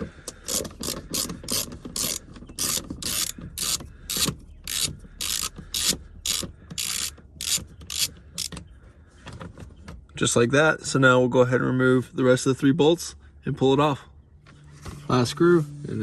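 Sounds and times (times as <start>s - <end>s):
hand ratchet clicking: 0.3s - 8.6s.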